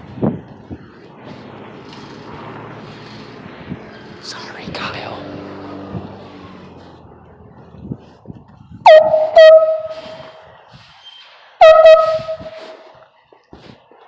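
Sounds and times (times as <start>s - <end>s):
air horn blasts: 8.9s - 10.4s, 11.6s - 13.0s.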